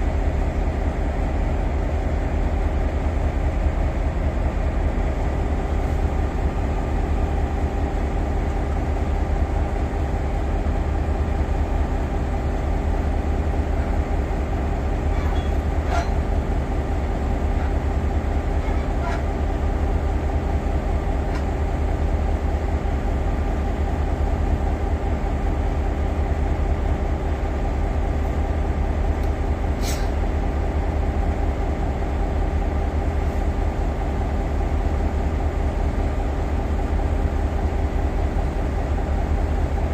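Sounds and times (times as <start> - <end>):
locomotive blowers humming: 4.7 - 25.8.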